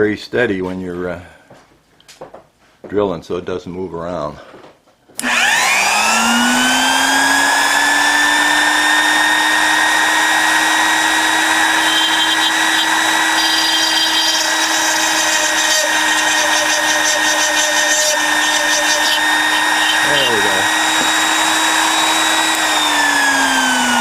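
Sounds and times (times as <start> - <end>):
electric drill whining: 5.2 - 24.0.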